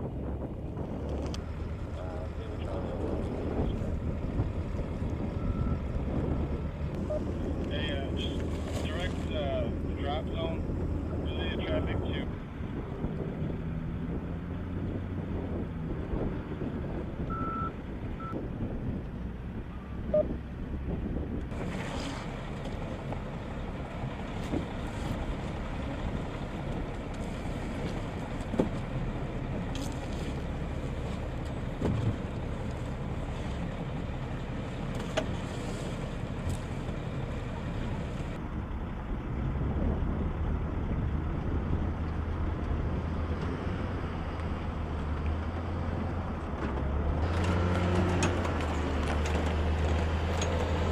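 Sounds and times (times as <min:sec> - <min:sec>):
engine noise: 0:00.0 - 0:50.9
wind: 0:00.0 - 0:50.9.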